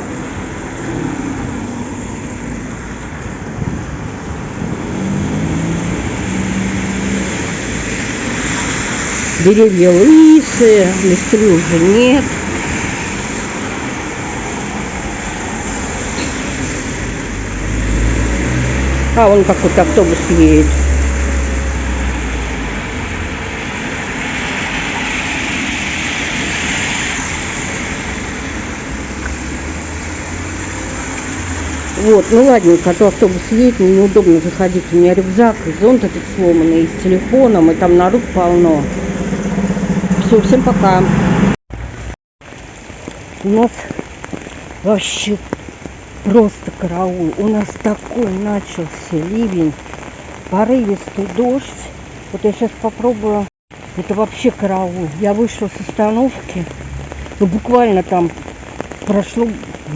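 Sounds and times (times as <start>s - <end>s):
vehicles passing on wet road: 0.0s - 59.9s
engine hum: 10.0s - 25.2s, 26.7s - 42.2s.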